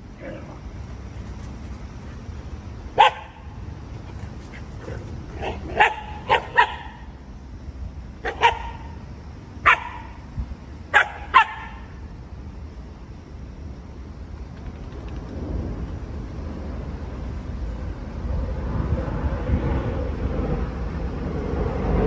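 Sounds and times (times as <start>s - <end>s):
dog barking: 3.0s - 3.4s, 5.4s - 7.0s, 8.2s - 9.0s, 9.6s - 10.2s, 10.9s - 11.9s.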